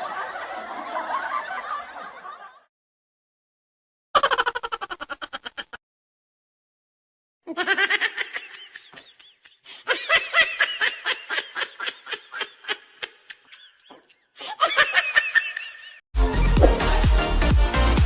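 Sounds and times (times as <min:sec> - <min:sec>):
person laughing: 0:04.2 - 0:05.8, 0:07.5 - 0:16.0.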